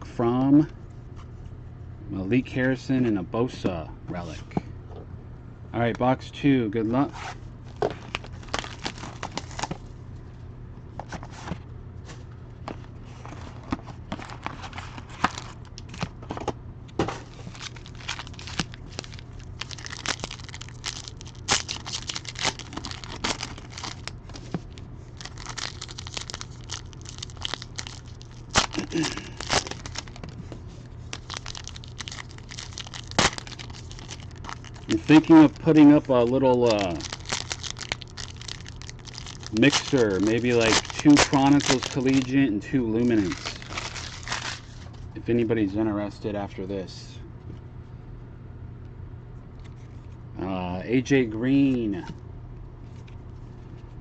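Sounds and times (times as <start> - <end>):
foil and plastic wrappers crinkling: 7.7 - 9.9, 13.1 - 16.1, 17.1 - 45.0.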